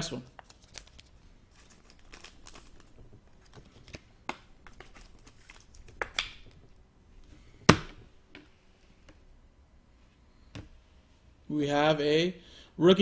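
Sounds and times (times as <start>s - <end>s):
trading cards clicking and rustling: 0.4s - 6.6s.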